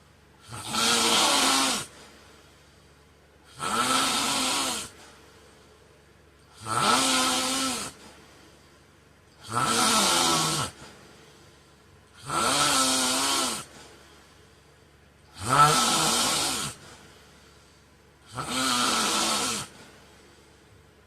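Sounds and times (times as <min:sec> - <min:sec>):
man snoring: 0:00.4 - 0:02.0, 0:03.4 - 0:05.0, 0:06.5 - 0:08.1, 0:09.4 - 0:10.9, 0:12.2 - 0:13.8, 0:15.3 - 0:16.9, 0:18.2 - 0:19.9.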